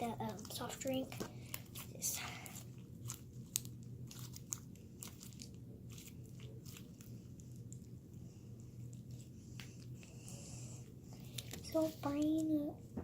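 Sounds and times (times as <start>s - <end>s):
slime crackling and popping: 0.0s - 8.0s
steady low hum: 0.0s - 13.0s.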